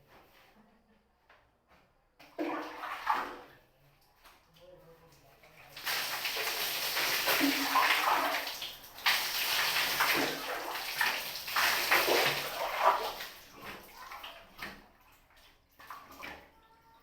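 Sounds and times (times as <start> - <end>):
bath water splashing and pouring: 2.3 - 3.5, 5.5 - 16.5.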